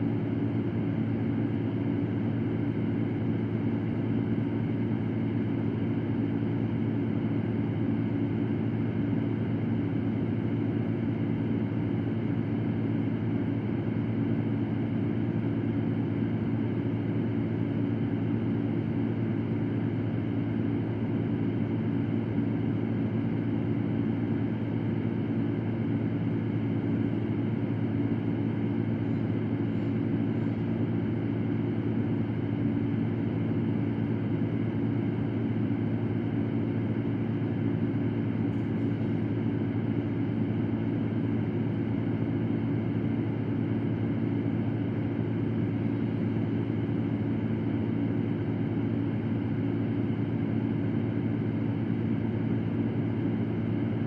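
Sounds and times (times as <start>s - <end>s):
electric fan whirring: 0.0s - 54.0s.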